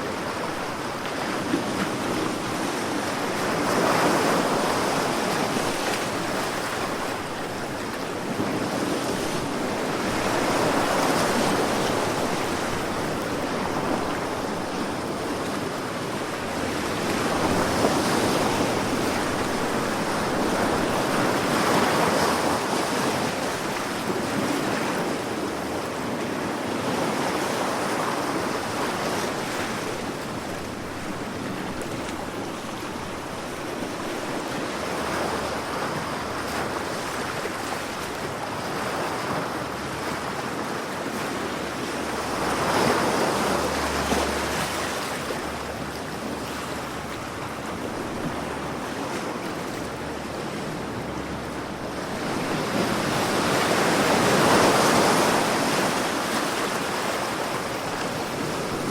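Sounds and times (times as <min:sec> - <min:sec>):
sea waves washing in: 0:00.0 - 0:58.9
big wave breaking: 0:26.9 - 0:58.9.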